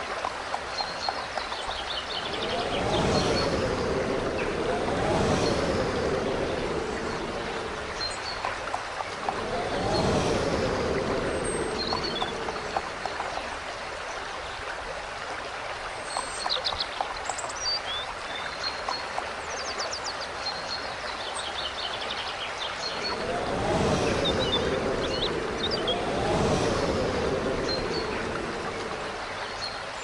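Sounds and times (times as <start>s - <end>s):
flowing water rushing: 1.2s - 16.1s, 22.8s - 30.0s
passing whoosh: 2.1s - 13.6s, 22.8s - 29.6s.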